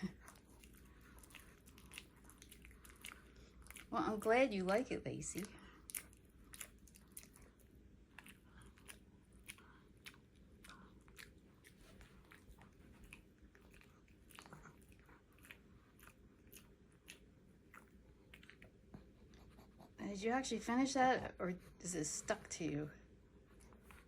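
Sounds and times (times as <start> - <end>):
dog chewing treat: 0.1 - 4.8, 5.4 - 19.1.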